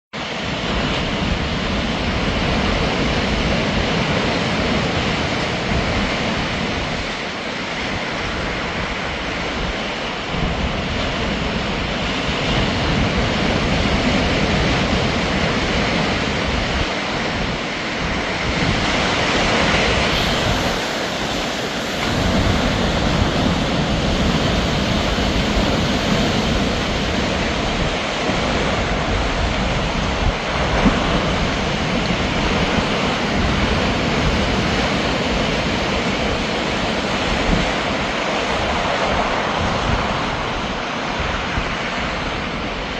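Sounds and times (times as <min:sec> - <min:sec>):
waves crashing on rocks: 0:00.2 - 0:42.9
wind rumbling on microphone: 0:00.2 - 0:42.9.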